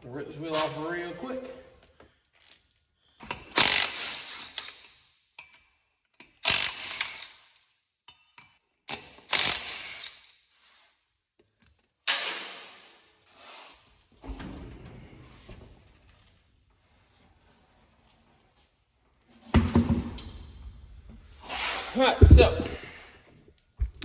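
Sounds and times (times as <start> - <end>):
impact wrench bursts: 3.5 - 4.2, 6.4 - 7.3, 9.4 - 10.2.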